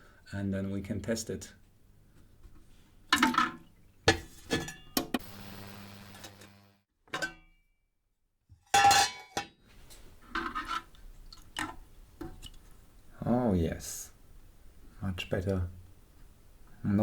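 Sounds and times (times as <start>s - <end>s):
ultrasonic cleaner hiss and hum: 5.2s - 6.8s.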